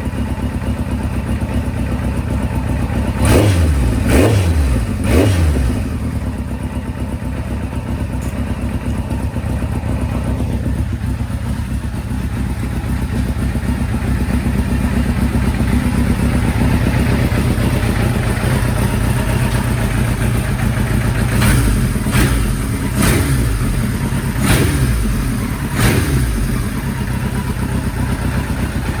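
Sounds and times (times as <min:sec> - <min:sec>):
motorcycle engine idling: 0:00.0 - 0:29.0
engine revving: 0:03.1 - 0:06.3, 0:16.1 - 0:29.0.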